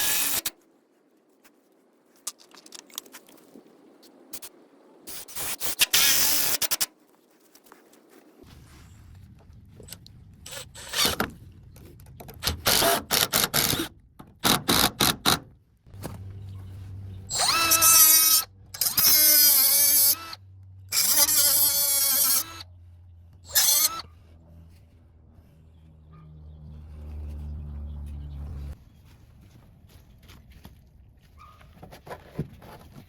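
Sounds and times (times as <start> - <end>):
power drill driving fasteners: 0.0 - 0.5, 5.1 - 6.9, 10.5 - 11.3, 12.3 - 15.5, 17.3 - 22.6, 23.4 - 24.1.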